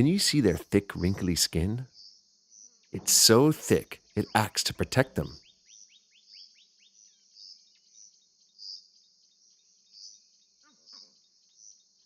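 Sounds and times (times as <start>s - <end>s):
soft bird chirps: 0.0s - 12.0s
faint call: 3.0s - 5.4s.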